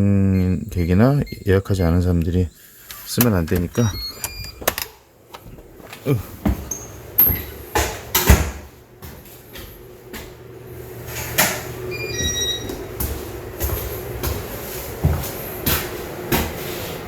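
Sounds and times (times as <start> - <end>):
electronic lock beeps: 0.3 - 4.9.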